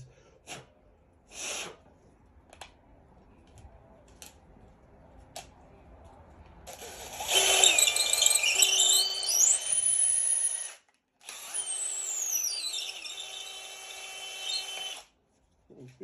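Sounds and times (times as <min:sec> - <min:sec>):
power drill whining: 0:06.7 - 0:15.1.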